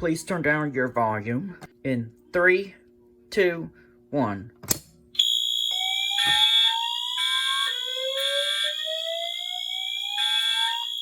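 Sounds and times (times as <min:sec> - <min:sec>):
high-pitched alarm tone: 0:05.2 - 0:11.0.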